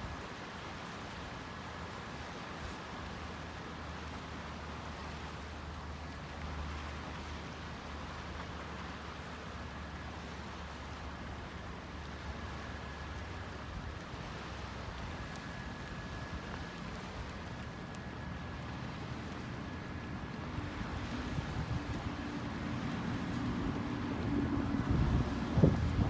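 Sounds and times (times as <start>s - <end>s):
lake water washing: 0.0s - 26.0s
wind on microphone: 19.0s - 26.0s.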